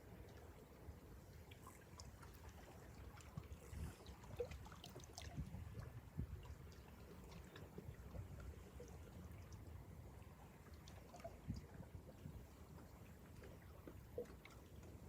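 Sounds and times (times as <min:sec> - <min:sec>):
water lapping and trickling: 0:00.0 - 0:15.0.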